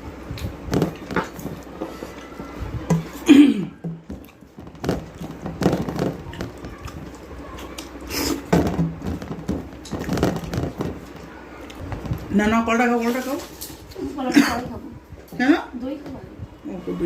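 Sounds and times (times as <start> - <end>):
person chewing food: 4.1 - 8.5.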